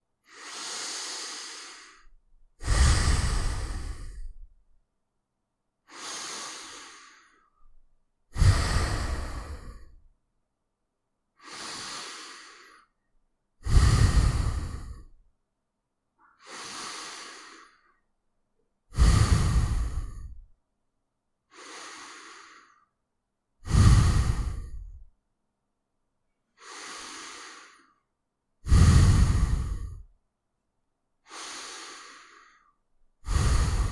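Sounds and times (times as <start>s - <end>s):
person breathing through nose: 0.2s - 4.4s, 5.9s - 7.6s, 8.3s - 10.0s, 11.4s - 12.9s, 13.6s - 15.1s, 16.2s - 18.0s, 18.9s - 20.5s, 21.5s - 22.9s, 23.6s - 25.1s, 26.6s - 28.0s, 28.6s - 30.1s, 31.3s - 33.9s.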